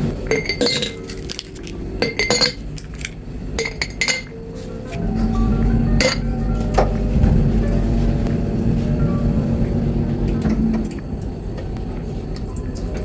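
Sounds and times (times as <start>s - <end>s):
low steady rumble: 0.0s - 12.6s
glassware clinking: 0.3s - 5.4s, 6.0s - 6.9s.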